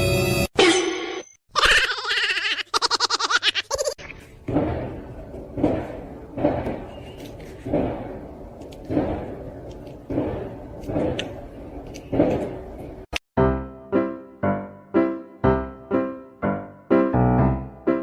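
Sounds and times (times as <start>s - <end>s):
thumps: 4.4s - 13.1s.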